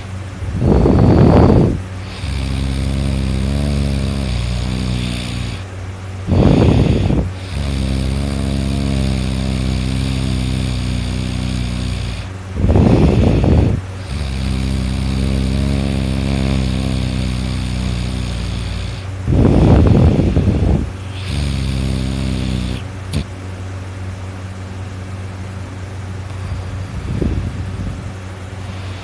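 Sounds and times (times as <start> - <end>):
person snoring: 0.0 - 5.7, 6.3 - 23.3
steady low hum: 0.0 - 29.0.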